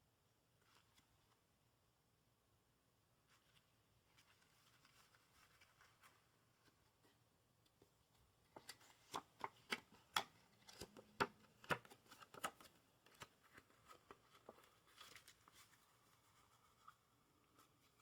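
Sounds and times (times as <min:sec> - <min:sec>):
playing cards clicking and snapping: 0:08.6 - 0:13.3.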